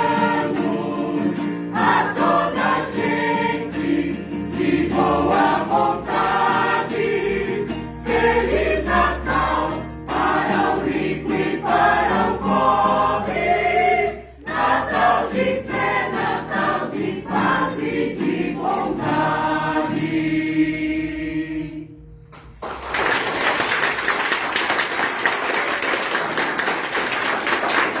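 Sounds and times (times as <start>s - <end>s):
choir singing: 0.0s - 22.2s
audience applauding: 22.5s - 28.0s.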